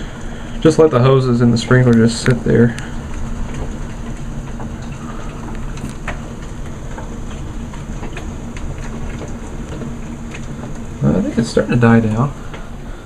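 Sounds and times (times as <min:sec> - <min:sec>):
hailstones pelting down: 0:00.0 - 0:13.0
low steady hum: 0:00.0 - 0:13.0.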